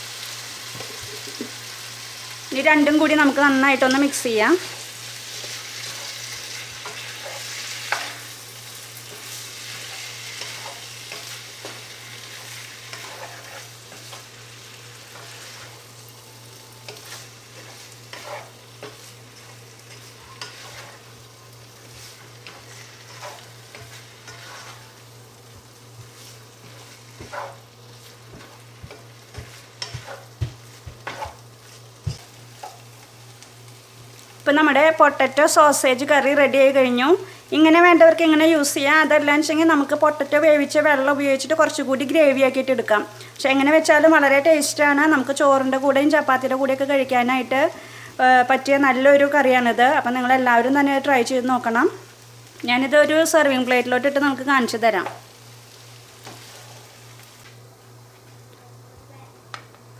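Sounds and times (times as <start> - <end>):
curry sizzling in a pan: 0.0 - 59.9
spoon scraping and knocking pan: 3.8 - 8.3, 9.1 - 14.3, 16.9 - 21.1, 21.8 - 25.0, 26.0 - 32.8.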